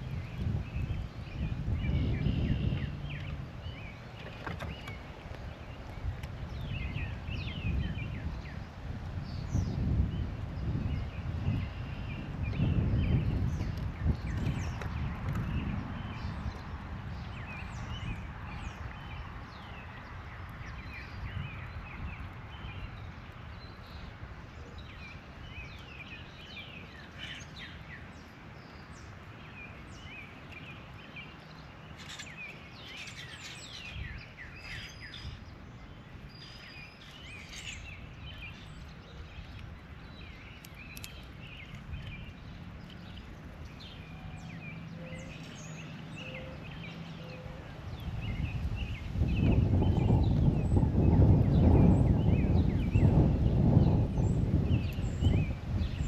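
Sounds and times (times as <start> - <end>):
bird chirps and calls: 29.9 - 35.5.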